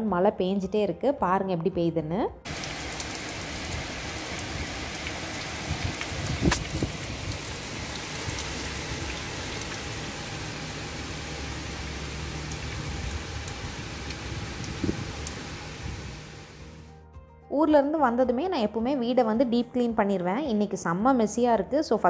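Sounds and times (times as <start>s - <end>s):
water dripping: 2.5s - 16.6s
heavy rain pouring: 2.5s - 16.8s.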